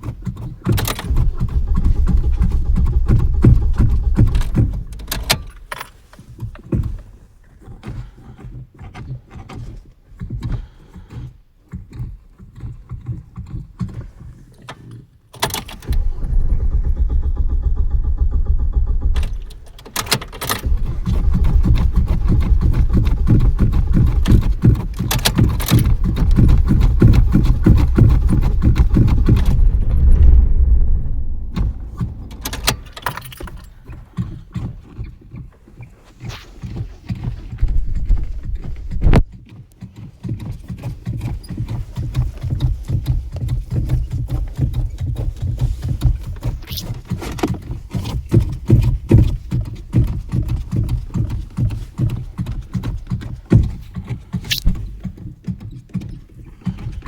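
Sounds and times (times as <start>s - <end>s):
knocks and rattles: 0.0s - 7.2s, 15.4s - 35.3s, 36.6s - 39.7s, 40.4s - 57.0s
car starter cranking engine: 0.3s - 6.3s, 15.4s - 34.4s, 37.5s - 39.3s, 54.4s - 55.4s.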